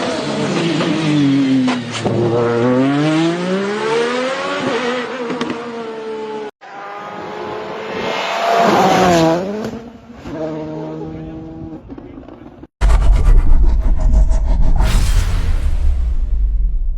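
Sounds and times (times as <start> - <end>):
rally car engine revving: 0.0 - 12.4.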